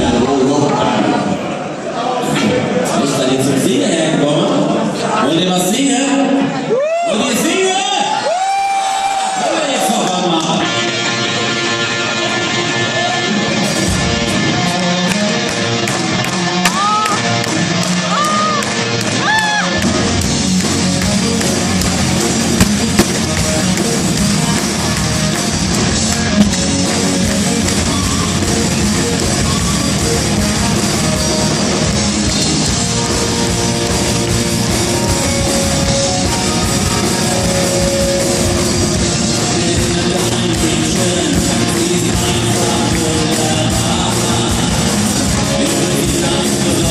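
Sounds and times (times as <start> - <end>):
live band playing: 10.5 - 46.9
guitar playing: 19.9 - 40.0.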